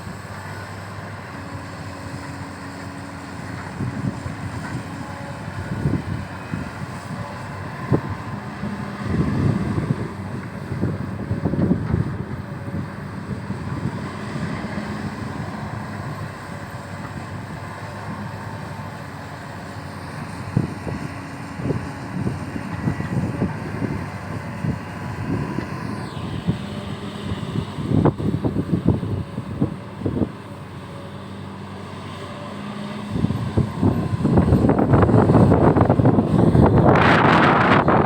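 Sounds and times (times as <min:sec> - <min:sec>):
excavator engine humming: 0:00.0 - 0:38.0.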